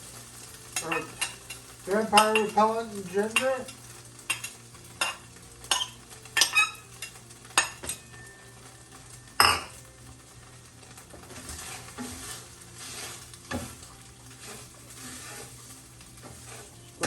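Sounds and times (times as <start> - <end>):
garlic sizzling in a pan: 0.0 - 17.0.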